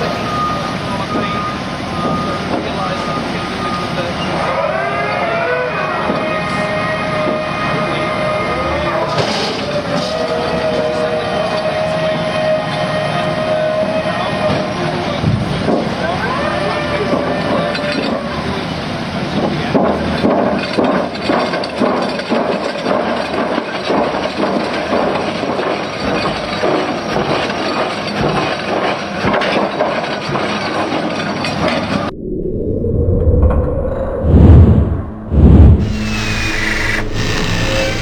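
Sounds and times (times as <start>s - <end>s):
metallic knocks and clanks: 19.4s - 32.0s
drilling rig low rumble: 31.9s - 38.0s
heavy low hit: 32.1s - 37.5s.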